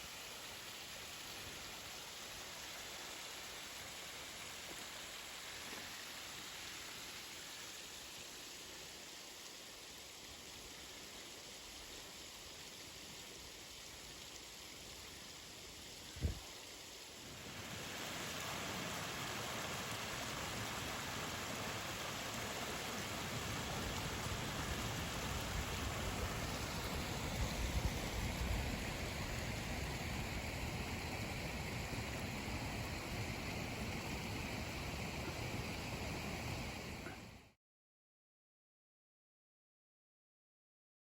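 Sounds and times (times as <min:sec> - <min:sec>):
wind rushing over microphone: 0:16.2 - 0:16.4.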